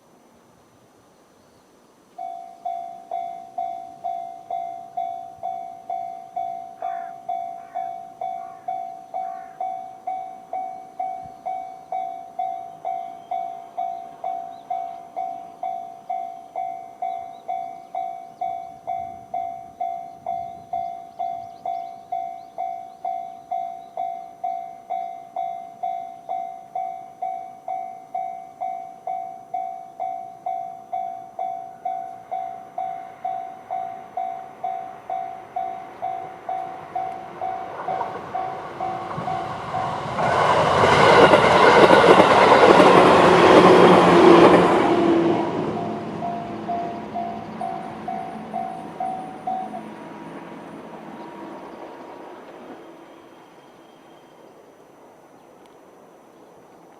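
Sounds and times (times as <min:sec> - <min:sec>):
electric train passing: 0:01.7 - 0:56.9
level crossing alarm dinging: 0:02.2 - 0:40.0, 0:45.7 - 0:50.0.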